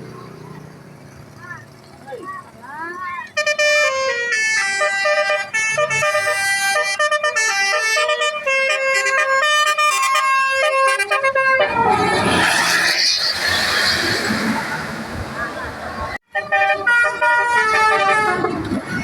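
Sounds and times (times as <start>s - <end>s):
bus horn playing a melody: 3.4s - 12.2s, 16.3s - 18.9s.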